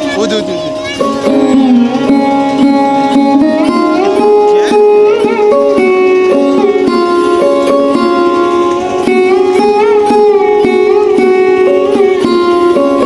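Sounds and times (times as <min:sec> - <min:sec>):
plucked string melody: 0:00.0 - 0:13.0.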